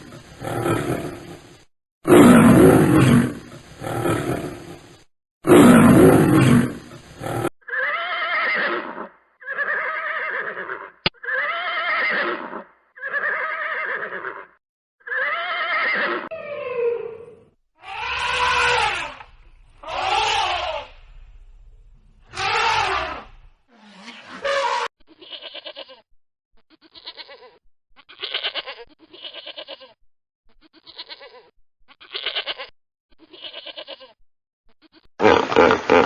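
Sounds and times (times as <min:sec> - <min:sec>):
animal roaring: 0:00.0 - 0:07.5, 0:16.4 - 0:24.9
animal calls rising and falling: 0:15.1 - 0:21.2, 0:22.2 - 0:24.9.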